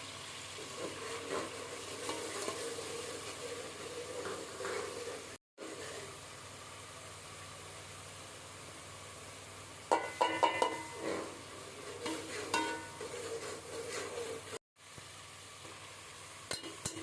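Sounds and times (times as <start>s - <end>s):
food sizzling: 0.0s - 17.0s
metal spoon scraping a pot: 0.8s - 6.1s, 10.2s - 14.6s.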